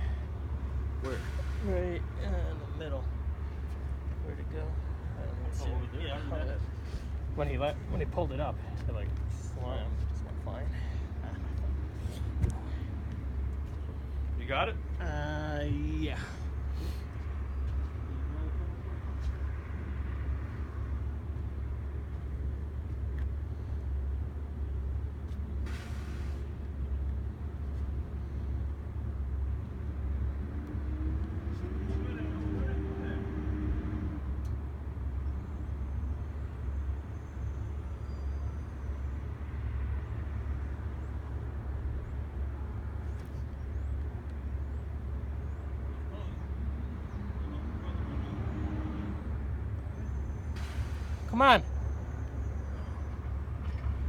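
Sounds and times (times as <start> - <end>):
short hiss: 25.6 - 26.4.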